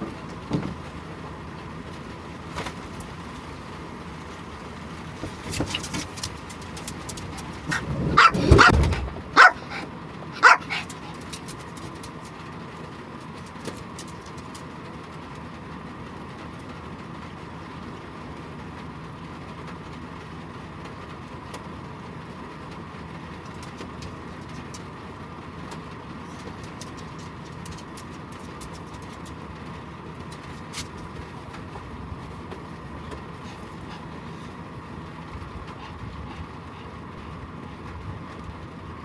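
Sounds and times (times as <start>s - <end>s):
dog barking: 7.4s - 11.2s.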